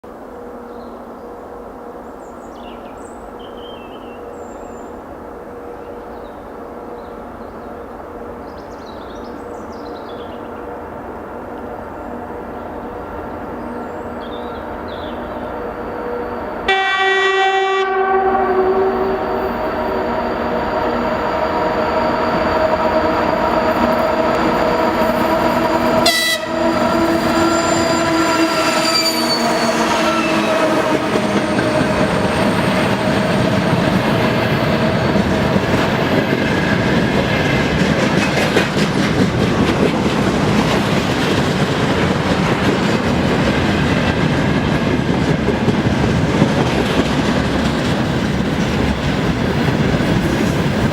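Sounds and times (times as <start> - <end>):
locomotive horn blast: 16.6 - 19.7, 25.0 - 31.2
train wheel clatter: 19.2 - 50.9.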